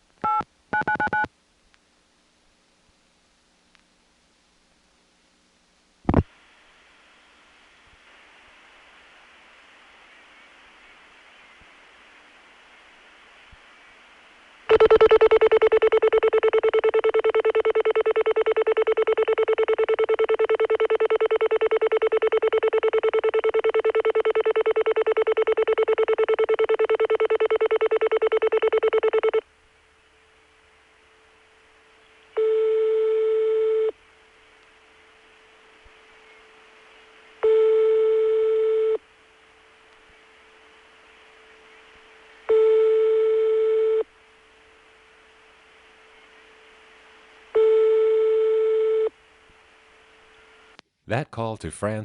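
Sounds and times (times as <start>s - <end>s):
buzzy telephone call-progress tone: 0.2s - 1.3s, 14.7s - 29.5s, 32.3s - 34.0s, 37.3s - 39.1s, 42.4s - 50.8s
faint line hiss: 1.3s - 14.7s, 29.4s - 51.3s
telephone ringback tone: 14.7s - 29.4s, 32.4s - 33.9s, 37.4s - 39.0s, 42.5s - 44.0s, 47.6s - 49.1s.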